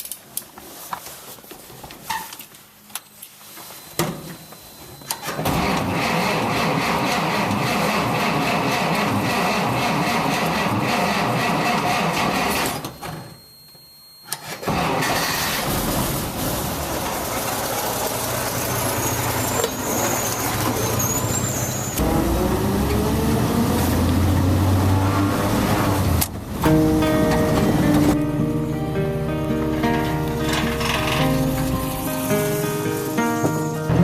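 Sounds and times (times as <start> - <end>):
pickup truck engine running: 15.6 - 33.6.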